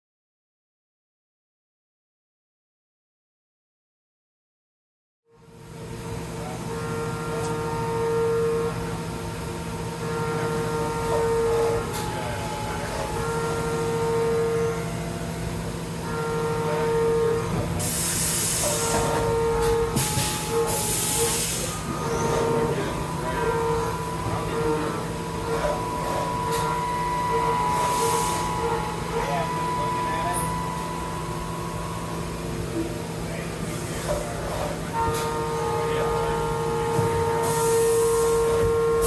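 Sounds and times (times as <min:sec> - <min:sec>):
milling machine humming and whining: 0:05.3 - 0:39.0
loud hiss bursts: 0:17.8 - 0:18.9, 0:20.0 - 0:21.8.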